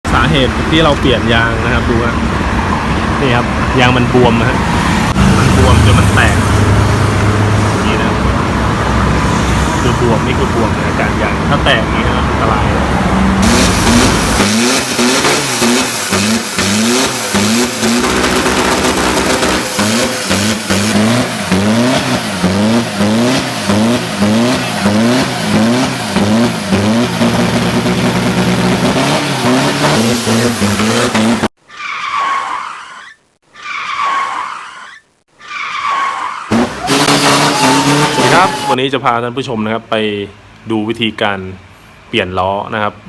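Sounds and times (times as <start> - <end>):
tyre and road noise: 0.0 - 43.0
car engine revving: 0.1 - 31.5, 36.5 - 38.8
tyre screeches: 31.7 - 38.8.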